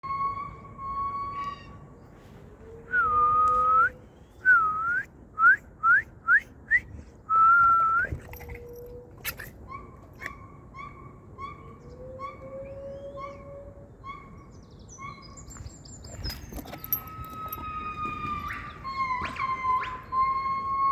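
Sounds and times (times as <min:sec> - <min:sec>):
animal whistled calls: 0:16.2 - 0:20.9.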